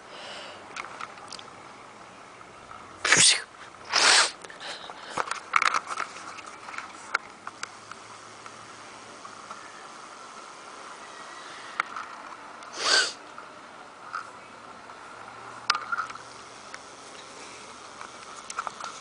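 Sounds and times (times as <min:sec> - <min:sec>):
person sneezing: 0:03.0 - 0:04.8, 0:12.7 - 0:13.2.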